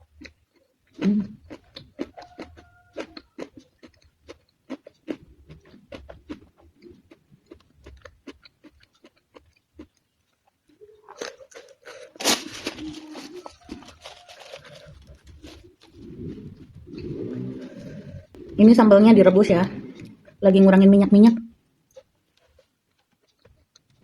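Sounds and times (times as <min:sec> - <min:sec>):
crunchy chewing of vegetables: 0:00.0 - 0:20.5, 0:21.4 - 0:24.0
mouth clicks: 0:10.8 - 0:20.4.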